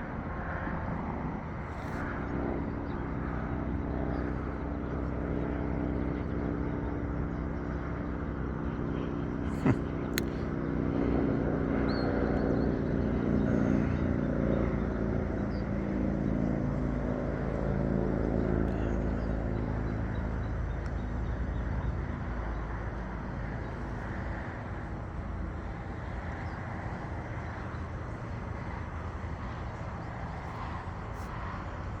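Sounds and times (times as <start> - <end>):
low outdoor rumble: 14.7 - 32.0.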